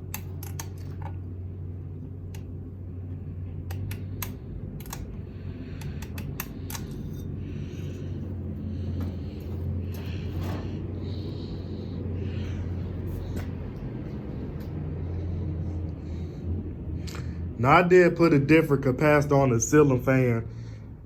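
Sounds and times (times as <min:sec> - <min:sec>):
fan blades swishing: 0:00.0 - 0:18.4
ceiling fan hum: 0:00.0 - 0:21.0
fan switch clicks: 0:03.6 - 0:05.2, 0:05.8 - 0:06.9.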